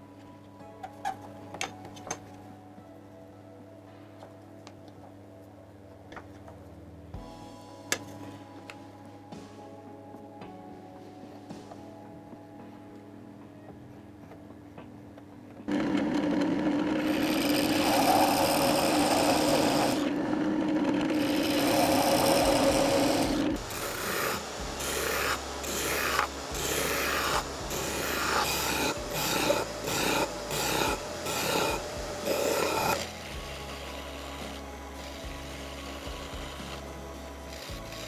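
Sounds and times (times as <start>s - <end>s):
power tool humming on wood: 15.7s - 38.0s
rasping strokes on wood: 17.0s - 20.2s, 21.1s - 38.0s.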